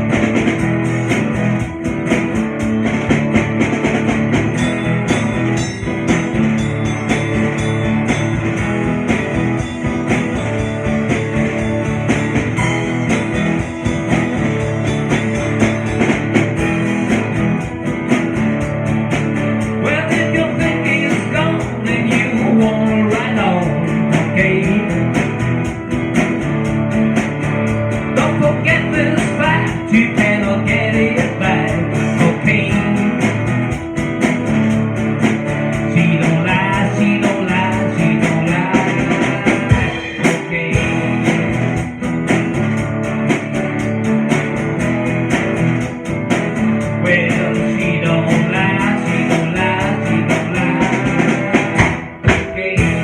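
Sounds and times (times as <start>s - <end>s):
live blues-rock band playing: 0.0s - 53.0s.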